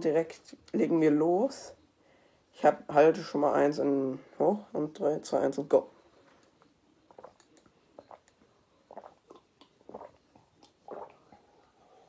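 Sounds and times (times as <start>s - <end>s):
person gulping water: 7.1s - 11.7s.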